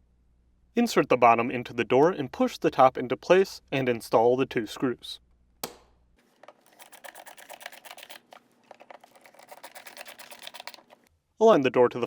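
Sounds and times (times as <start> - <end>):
screwdriver ticking and scraping: 6.4 - 11.1.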